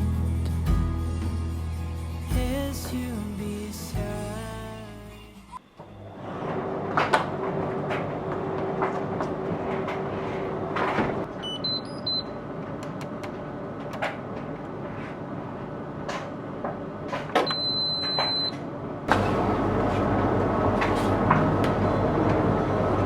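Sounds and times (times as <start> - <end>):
appliance running noise: 5.8 - 11.4, 19.1 - 23.0
appliance short beeps: 11.4 - 12.4, 17.4 - 18.6
long appliance beep: 11.4 - 12.4, 17.5 - 18.6.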